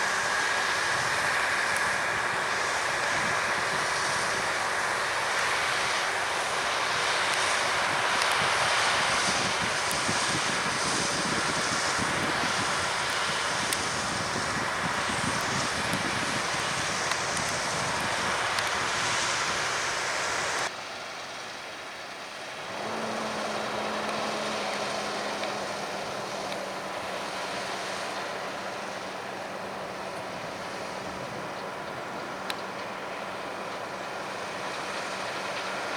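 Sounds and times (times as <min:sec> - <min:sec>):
harvest machinery engines running: 0:00.0 - 0:35.9
wind noise on microphone: 0:00.1 - 0:04.9, 0:07.8 - 0:20.7
steady low engine hum: 0:22.5 - 0:35.9.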